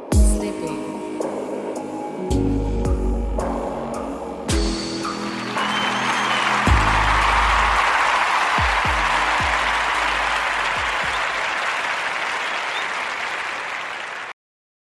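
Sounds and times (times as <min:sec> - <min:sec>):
applause: 0:05.1 - 0:14.4.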